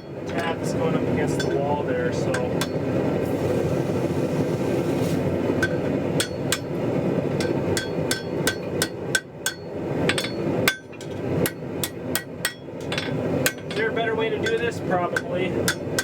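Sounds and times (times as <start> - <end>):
hammer striking steel on anvil: 1.4 - 1.7, 2.3 - 2.8, 5.6 - 16.0.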